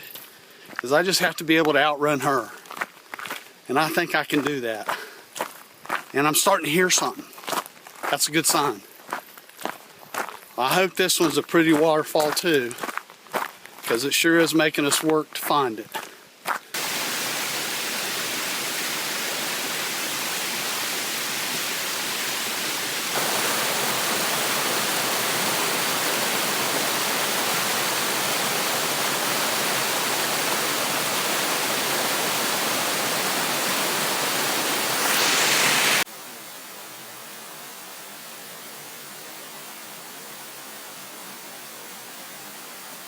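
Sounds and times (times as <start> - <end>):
waterfall rushing: 16.8 - 43.0.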